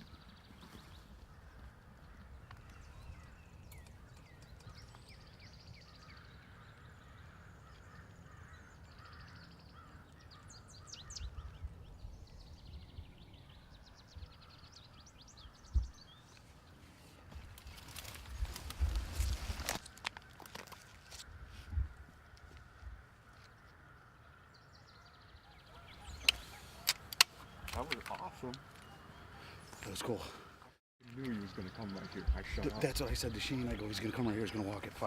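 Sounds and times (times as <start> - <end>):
songbirds chirping and trilling: 0.0 - 35.0.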